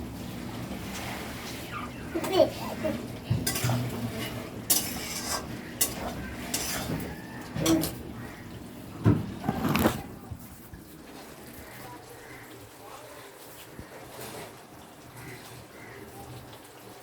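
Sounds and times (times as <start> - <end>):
spoon scraping and knocking pot: 3.3 - 8.0.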